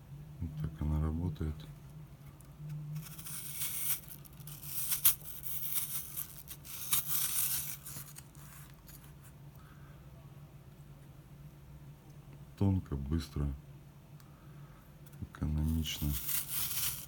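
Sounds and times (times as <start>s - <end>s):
peeler scraping a vegetable: 3.0s - 9.1s, 15.7s - 17.0s.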